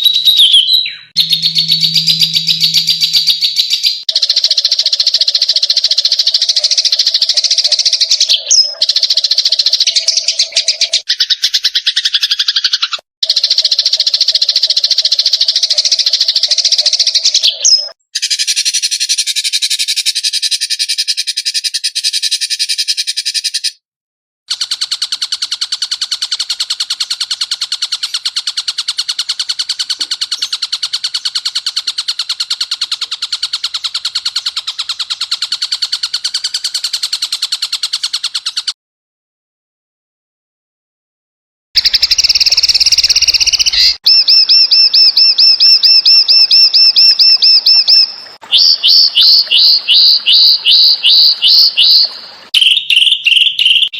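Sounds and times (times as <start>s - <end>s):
songbird buzzing trills: 0.0s - 4.0s.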